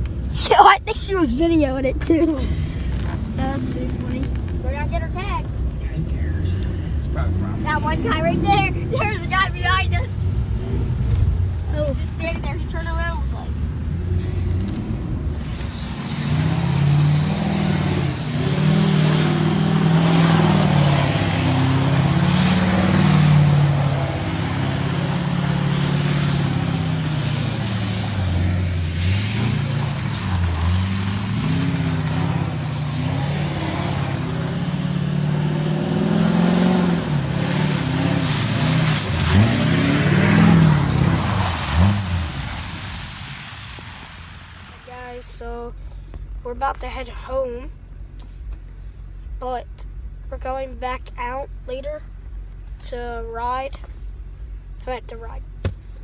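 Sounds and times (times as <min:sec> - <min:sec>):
diesel pickup engine revving: 0:00.0 - 0:56.0.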